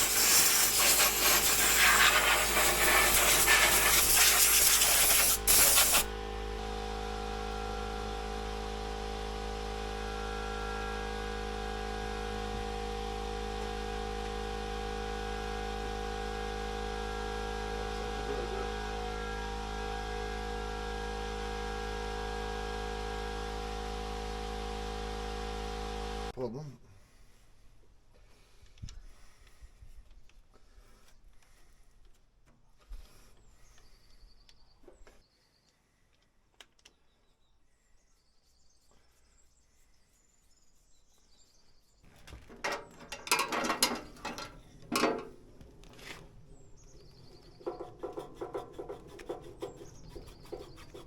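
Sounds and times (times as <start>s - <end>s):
loud spraying hiss: 0.0s - 6.1s.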